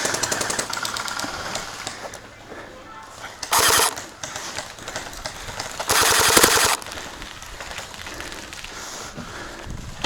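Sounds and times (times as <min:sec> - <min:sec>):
gel blaster firing burst: 0:03.5 - 0:04.0, 0:05.9 - 0:06.8.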